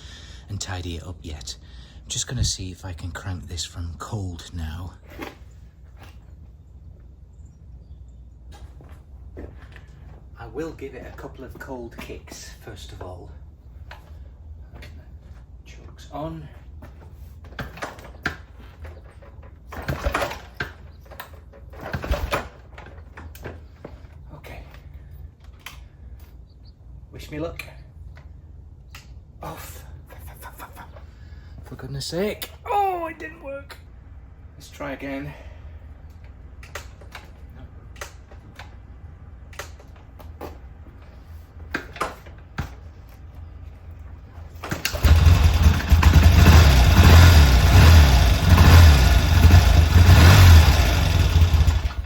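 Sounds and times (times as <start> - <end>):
motorcycle kick-starter engine turning over: 19.1 - 23.2, 44.6 - 52.0.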